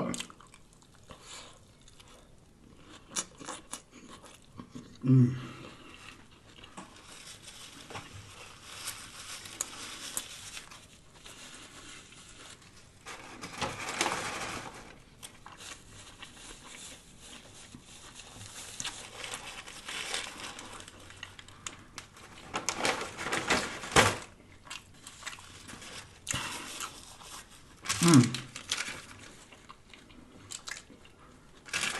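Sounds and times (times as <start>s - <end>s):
chewing and crunching food: 0.0s - 13.0s, 15.0s - 22.6s, 24.3s - 31.9s
paper wrapper crinkling: 6.7s - 29.7s, 31.6s - 31.9s.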